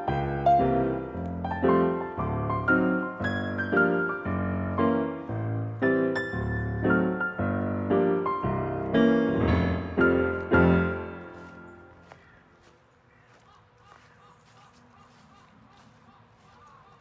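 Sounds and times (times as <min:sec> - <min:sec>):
gentle piano music: 0:00.0 - 0:12.3.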